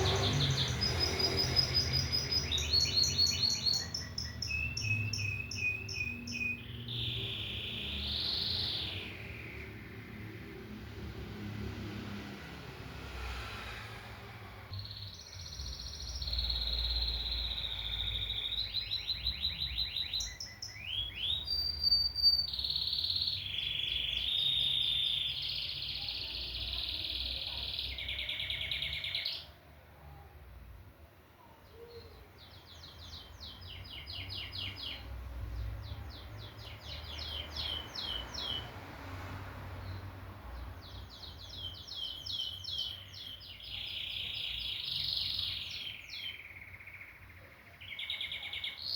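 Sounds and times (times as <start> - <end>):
canary singing: 0.0 - 10.4, 14.7 - 29.5, 40.9 - 48.9.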